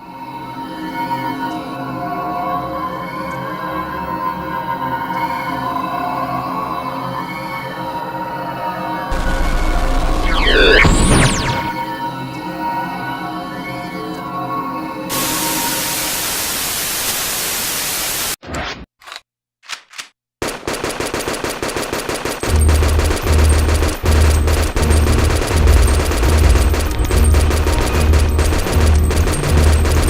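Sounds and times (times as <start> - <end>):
heavy pulsing bass beat: 9.1 - 11.7, 22.4 - 30.0
machine-gun fire: 9.1 - 11.7, 20.4 - 30.0
static hiss: 15.1 - 18.4.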